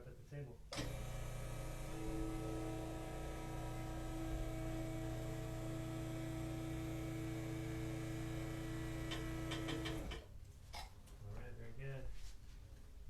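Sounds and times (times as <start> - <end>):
electric lift motor humming: 0.7 - 10.2.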